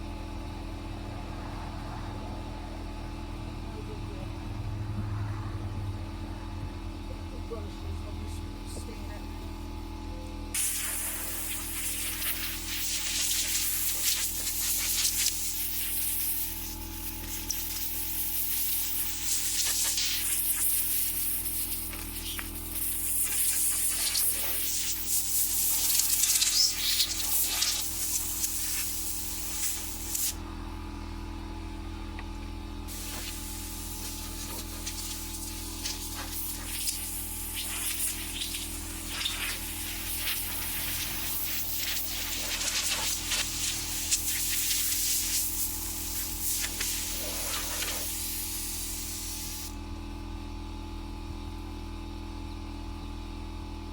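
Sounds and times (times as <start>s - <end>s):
steady low hum: 0.0s - 53.2s
hissing spray jet: 10.6s - 30.4s, 32.9s - 49.8s.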